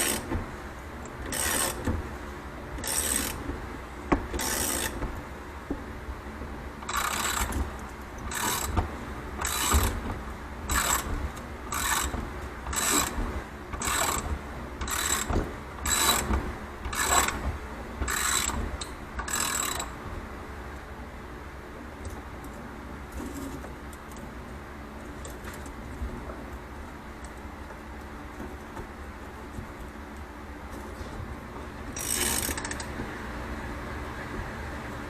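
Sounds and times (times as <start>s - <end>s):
spring compressor ratcheting: 0.0s - 0.4s, 1.2s - 2.0s, 2.8s - 5.2s, 6.8s - 20.0s, 31.9s - 32.9s.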